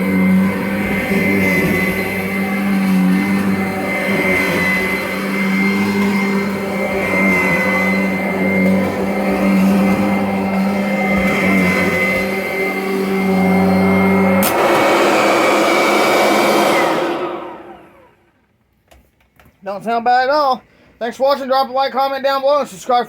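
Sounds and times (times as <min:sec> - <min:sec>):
vacuum cleaner running: 0:00.0 - 0:18.3.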